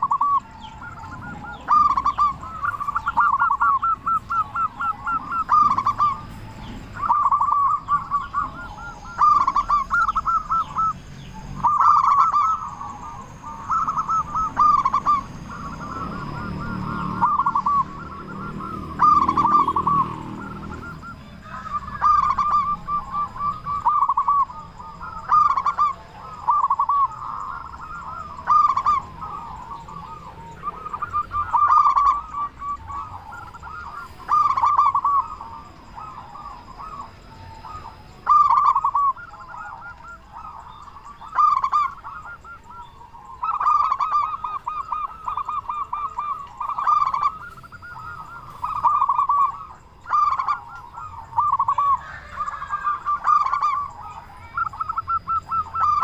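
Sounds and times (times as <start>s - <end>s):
dove cooing: 0.0s - 56.0s.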